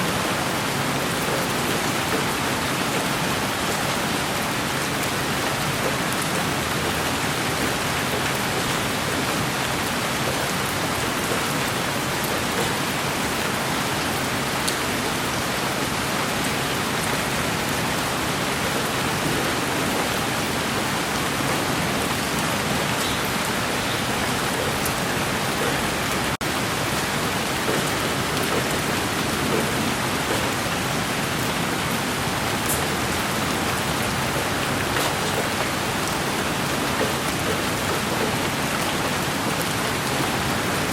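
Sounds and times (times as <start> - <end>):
steady rain hiss: 0.0 - 40.9
raindrop ticks: 4.2 - 13.6, 18.6 - 31.6, 32.5 - 40.9.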